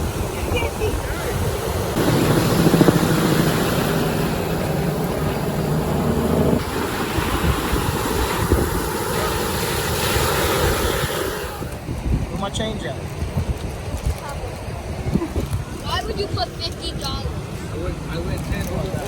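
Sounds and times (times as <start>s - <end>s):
ocean surf: 0.0s - 13.1s
wind buffeting microphone: 0.0s - 19.0s.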